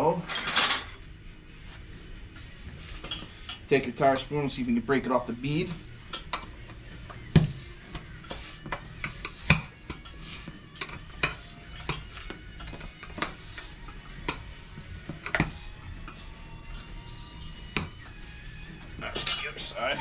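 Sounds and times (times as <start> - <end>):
faint background music: 0.0 - 20.0.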